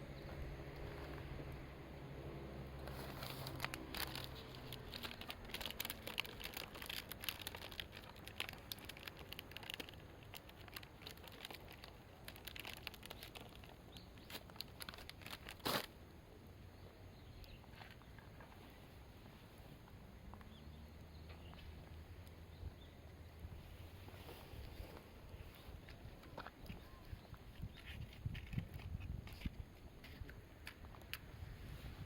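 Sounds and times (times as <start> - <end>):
low steady hum: 0.0 - 6.0.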